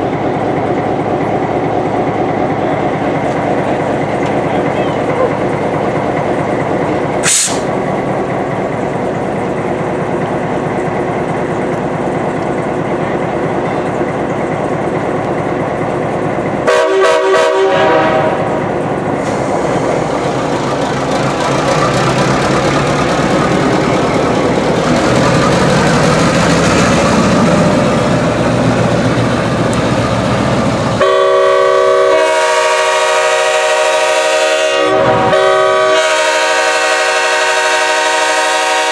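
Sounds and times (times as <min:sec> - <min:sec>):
train running: 0:00.0 - 0:38.9
train air horn: 0:16.7 - 0:18.5, 0:31.0 - 0:38.9.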